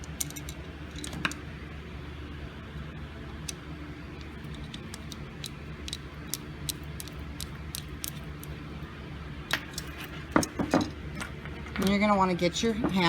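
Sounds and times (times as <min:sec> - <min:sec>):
small metal parts clicking: 0:00.0 - 0:01.4, 0:04.2 - 0:08.6, 0:09.5 - 0:10.9
steady low hum: 0:00.0 - 0:13.0.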